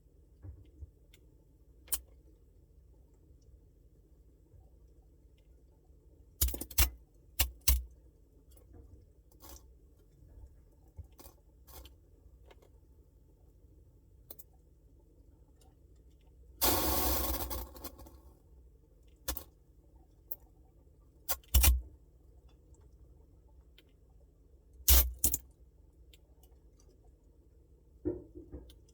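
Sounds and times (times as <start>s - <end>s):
hissing noise: 16.6s - 18.1s.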